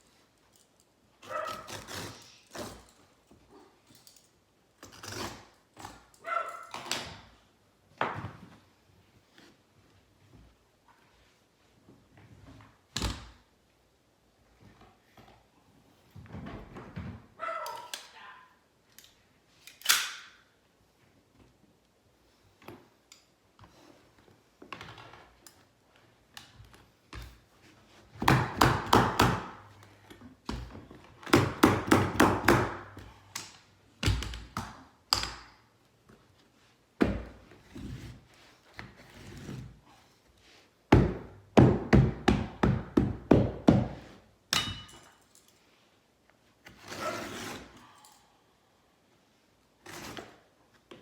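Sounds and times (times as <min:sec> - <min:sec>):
knocks on wooden stairs: 0:40.9 - 0:44.0.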